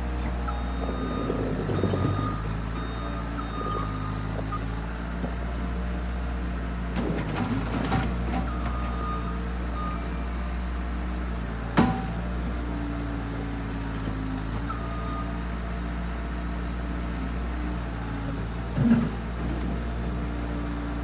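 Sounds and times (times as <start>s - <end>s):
skid loader engine running: 0.0s - 21.0s.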